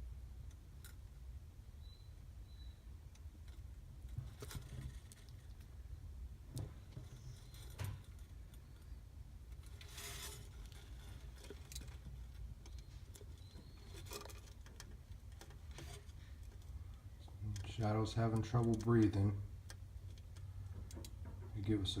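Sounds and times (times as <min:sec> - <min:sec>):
low steady hum: 0:00.0 - 0:22.0
rubbing and scraping: 0:09.6 - 0:16.8.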